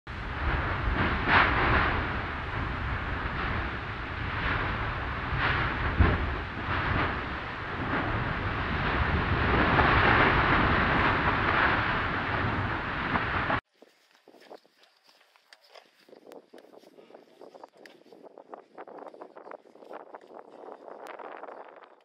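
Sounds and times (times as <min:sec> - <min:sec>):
lava fountain rushing rumble: 0:00.1 - 0:13.6
lava thuds: 0:00.3 - 0:13.6.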